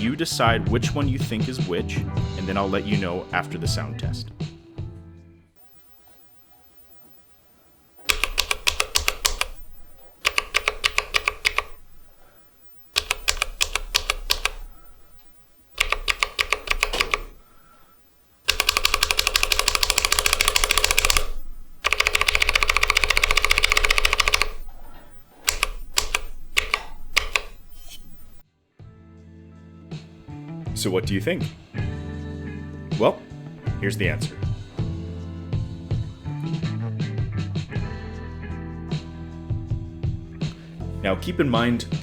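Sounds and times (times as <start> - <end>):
mechanical keyboard keys clicking: 8.0 - 12.4, 13.0 - 17.6, 18.5 - 28.4.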